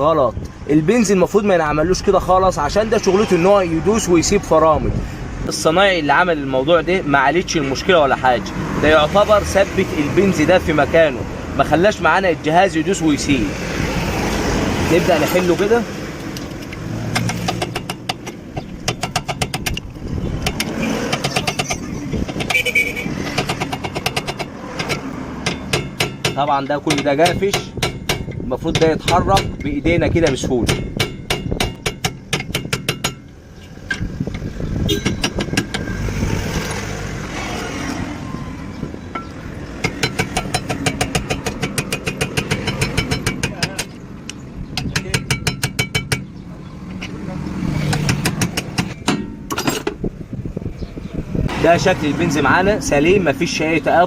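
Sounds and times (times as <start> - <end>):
tool metallic clicks: 16.3 - 22.6, 23.2 - 35.9, 39.1 - 46.3
rapid metal-on-metal tapping: 17.1 - 34.1, 39.1 - 46.3.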